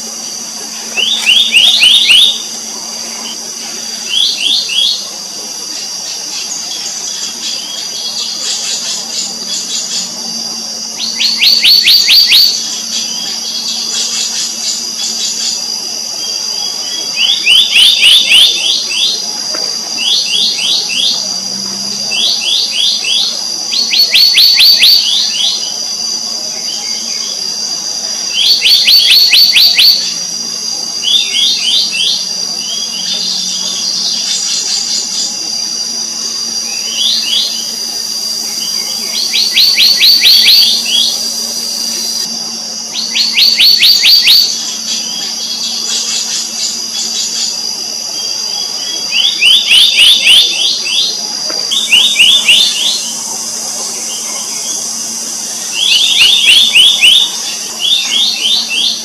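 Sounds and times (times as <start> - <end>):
high-pitched drone: 0.0 - 59.0.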